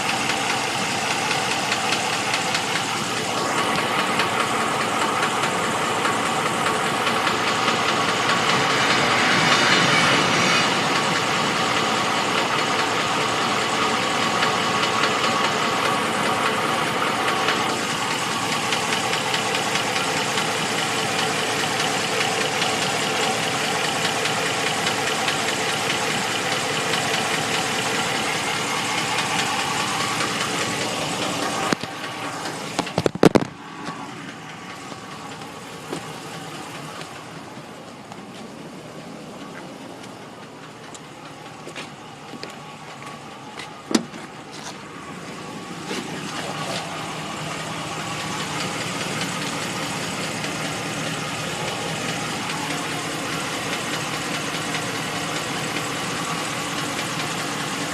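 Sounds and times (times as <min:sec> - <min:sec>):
engine idling with knock: 0:00.0 - 0:57.9.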